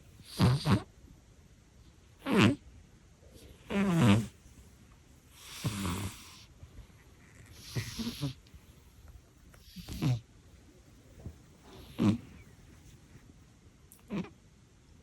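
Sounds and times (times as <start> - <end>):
cat snoring: 0.2 - 0.9, 2.2 - 2.6, 3.4 - 4.4, 5.3 - 6.5, 7.3 - 8.4, 9.6 - 10.2, 11.7 - 12.5, 14.1 - 14.3.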